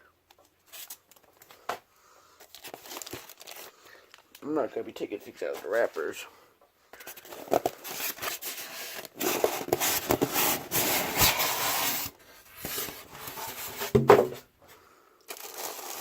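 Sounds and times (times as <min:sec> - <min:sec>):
cardboard packaging rubbing and scraping: 0:07.2 - 0:14.4, 0:15.4 - 0:16.0
bump in a box: 0:09.2 - 0:14.4.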